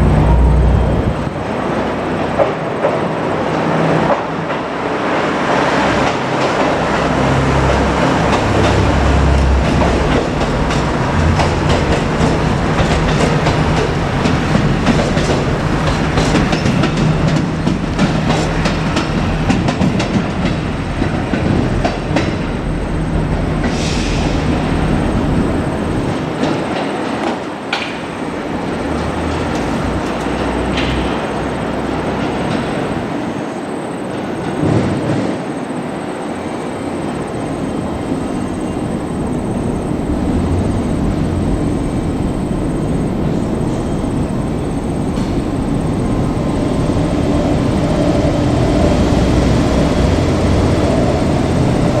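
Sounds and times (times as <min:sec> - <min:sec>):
low hum: 0:00.0 - 0:01.4, 0:09.1 - 0:13.8
diesel railcar running by: 0:00.0 - 0:52.0.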